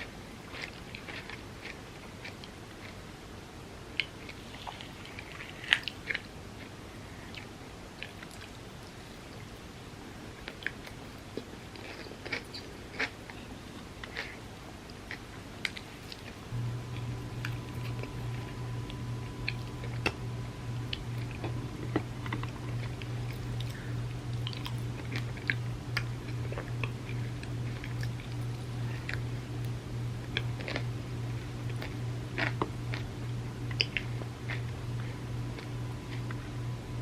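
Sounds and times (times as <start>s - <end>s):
crunching cookies: 0.0s - 3.1s, 4.0s - 36.9s
low steady hum: 0.0s - 37.0s
wet chewing clicks: 4.0s - 9.5s, 17.4s - 30.9s, 31.6s - 33.1s, 33.7s - 34.7s.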